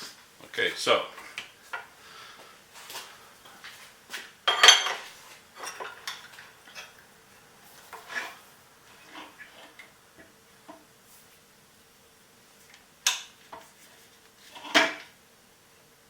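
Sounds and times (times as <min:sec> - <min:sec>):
metal clanks and clinks: 0:04.5 - 0:06.9.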